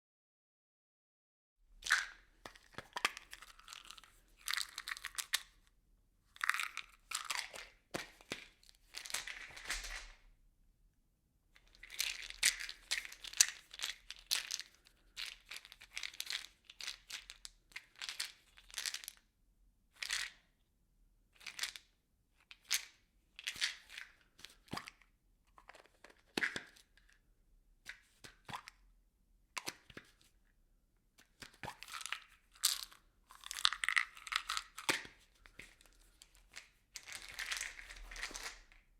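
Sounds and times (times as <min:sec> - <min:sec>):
objects rattling in plastic bottle: 0:08.3 - 0:10.2, 0:31.7 - 0:38.9.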